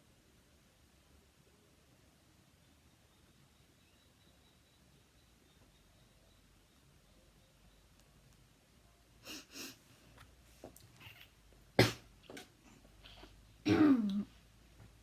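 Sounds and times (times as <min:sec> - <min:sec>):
child coughing: 0:11.8 - 0:12.0, 0:13.7 - 0:14.3.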